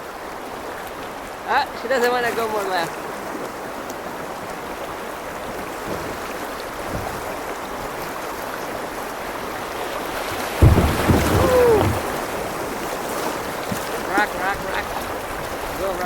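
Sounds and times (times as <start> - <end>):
river water rushing: 0.0 - 16.0
loud low thump: 10.6 - 12.3.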